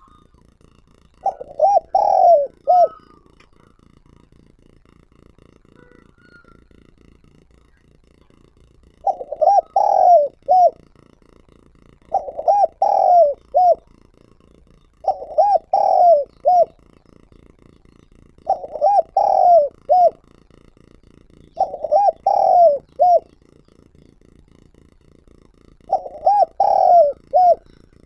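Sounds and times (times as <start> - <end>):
dove cooing: 1.2 - 3.8, 8.9 - 10.9, 12.0 - 14.1, 15.0 - 20.6, 21.3 - 23.6, 25.3 - 28.0.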